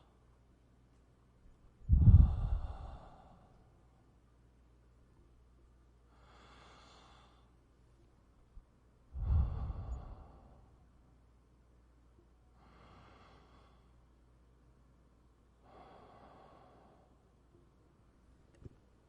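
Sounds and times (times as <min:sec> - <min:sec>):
slow breathing: 0:01.8 - 0:03.8, 0:06.1 - 0:07.6, 0:09.1 - 0:10.9, 0:12.6 - 0:14.0, 0:15.6 - 0:17.3.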